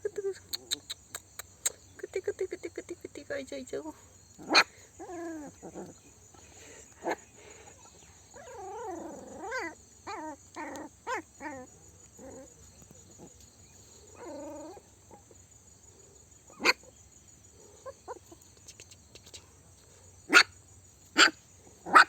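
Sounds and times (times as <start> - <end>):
puppies whimpering and squealing: 6.6 - 12.5.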